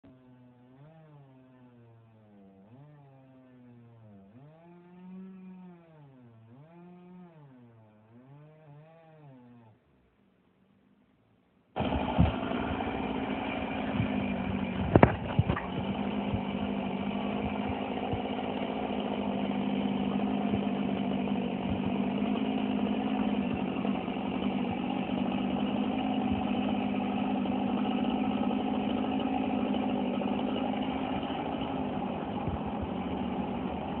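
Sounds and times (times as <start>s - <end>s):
engine running steadily: 11.8s - 34.0s
sharp knocks: 14.8s - 16.5s.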